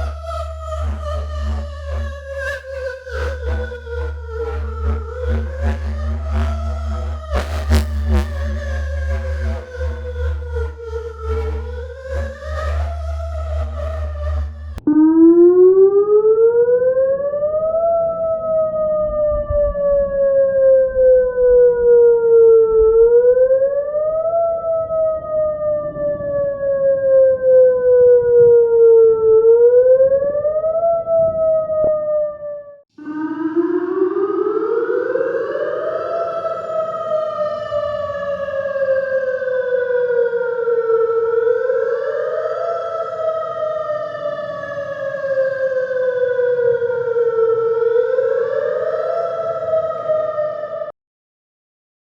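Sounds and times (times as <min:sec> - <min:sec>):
tornado siren wailing: 0:00.0 - 0:50.9.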